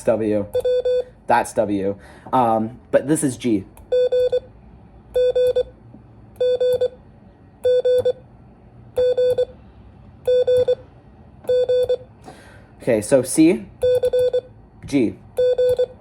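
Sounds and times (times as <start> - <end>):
morse code beeps: 0.6 - 1.2, 3.9 - 4.5, 5.2 - 5.8, 6.4 - 7.0, 7.6 - 8.2, 9.0 - 9.6, 10.3 - 10.8, 11.5 - 12.1, 13.8 - 14.5, 15.4 - 16.0.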